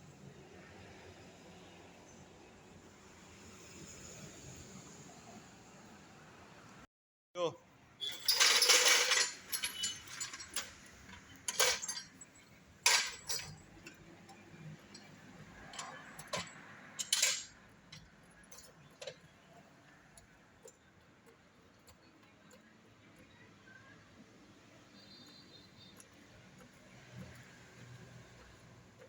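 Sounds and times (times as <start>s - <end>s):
metal tools clinking: 8.0s - 19.3s.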